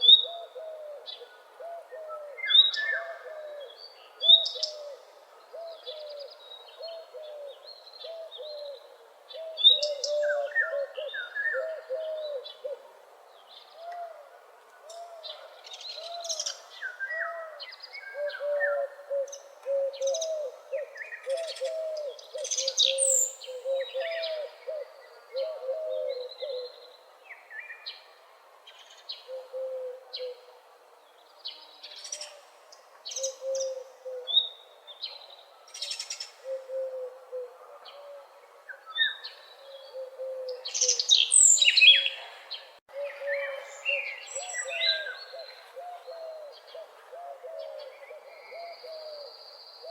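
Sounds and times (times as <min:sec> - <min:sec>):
birds chirping and trilling: 0:00.0 - 0:14.2, 0:31.1 - 0:49.9.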